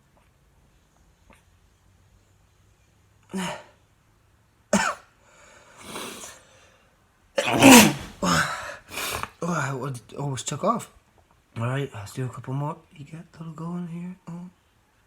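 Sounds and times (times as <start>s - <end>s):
man sneezing: 3.4s - 3.7s, 5.8s - 6.3s, 7.4s - 9.3s.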